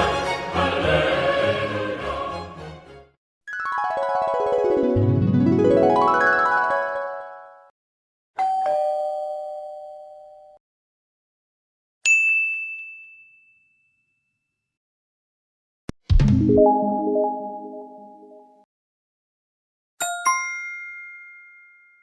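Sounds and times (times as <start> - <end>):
two-tone doorbell chime: 8.4 - 10.6, 20.0 - 22.0
musical chord: 16.3 - 18.6.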